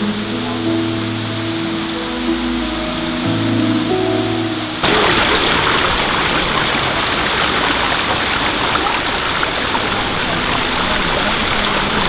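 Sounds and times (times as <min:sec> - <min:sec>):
waterfall rushing and splashing: 0:00.0 - 0:12.0.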